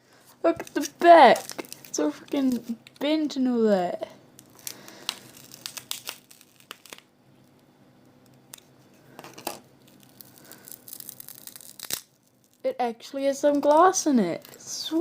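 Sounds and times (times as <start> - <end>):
plastic parts crinkling and rustling: 0.6 - 3.0, 8.5 - 12.6.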